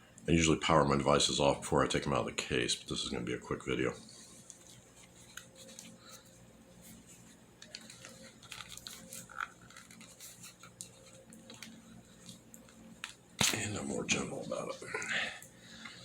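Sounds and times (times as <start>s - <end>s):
tablet handling clicks and rustles: 7.0s - 13.6s.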